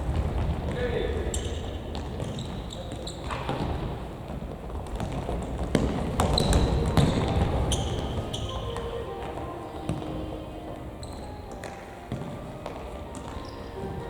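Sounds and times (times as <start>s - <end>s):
echoing hall noise: 0.0s - 14.0s
shoes squeaking on court: 0.0s - 14.0s
ball kicked and bouncing: 1.4s - 8.8s, 11.5s - 13.5s.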